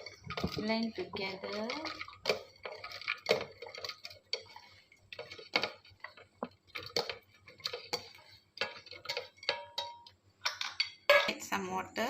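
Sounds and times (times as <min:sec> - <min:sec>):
kitchen utensils knocking: 0:08.6 - 0:11.6.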